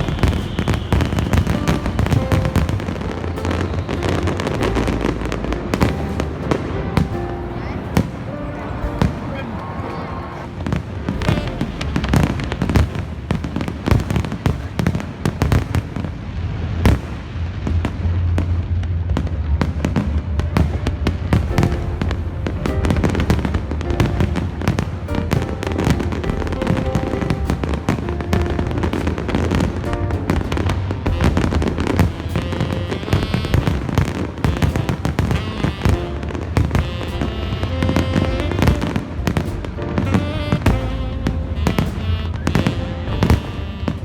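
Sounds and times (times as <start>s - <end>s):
fireworks bangs and crackles: 0.0s - 44.0s
music: 0.0s - 44.0s
low rumble: 15.8s - 44.0s.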